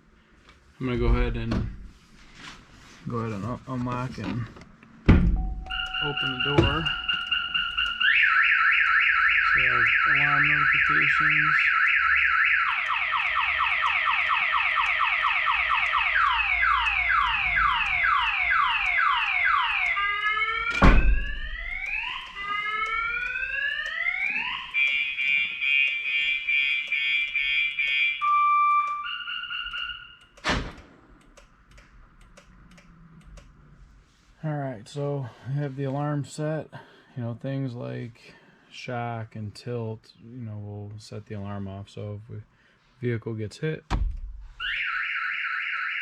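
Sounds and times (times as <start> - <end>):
car alarm siren: 5.4 - 30.6, 44.6 - 46.0.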